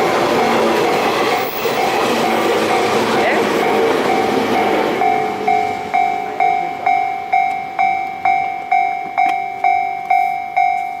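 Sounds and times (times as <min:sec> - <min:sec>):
level crossing warning bell: 0:00.0 - 0:11.0
passing train running noise: 0:00.0 - 0:11.0.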